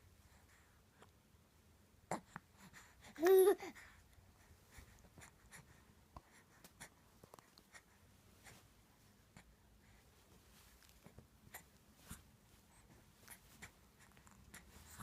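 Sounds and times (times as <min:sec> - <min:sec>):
soft clicks and snuffles: 0:04.8 - 0:08.7.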